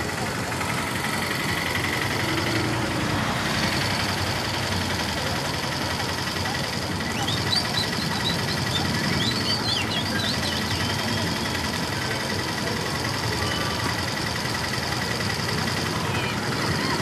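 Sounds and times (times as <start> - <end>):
traffic rumble: 0.0 - 17.0
high chirps: 7.1 - 11.4.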